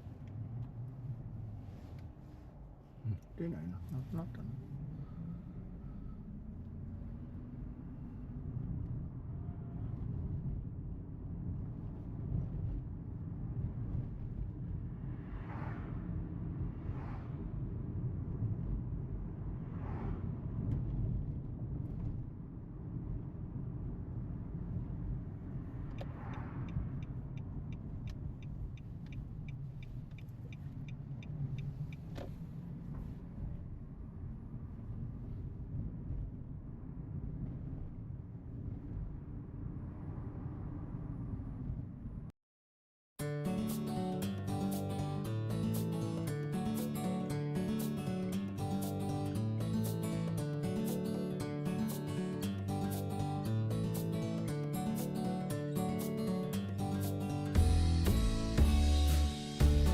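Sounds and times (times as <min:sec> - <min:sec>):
car driving rumble: 0:00.0 - 0:42.1, 0:56.7 - 0:59.9.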